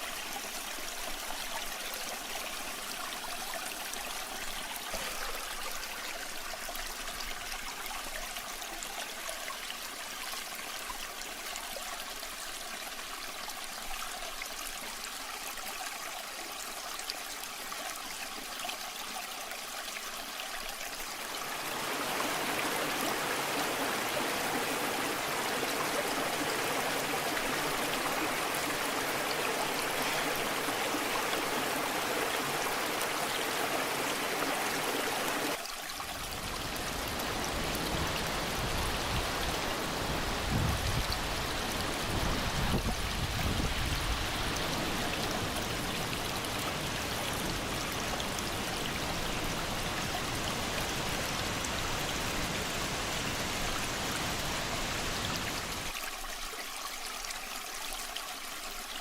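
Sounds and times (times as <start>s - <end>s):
waterfall rushing: 21.3s - 35.6s.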